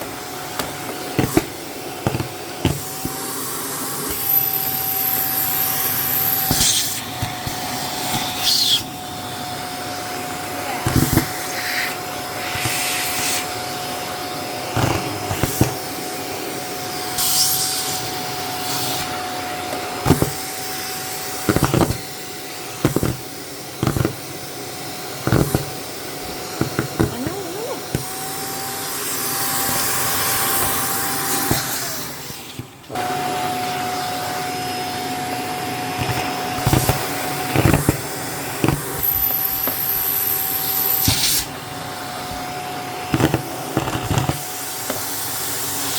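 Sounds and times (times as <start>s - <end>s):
vacuum cleaner motor whine: 0.0s - 45.9s
packing peanuts clattering: 35.9s - 41.5s, 42.3s - 45.1s.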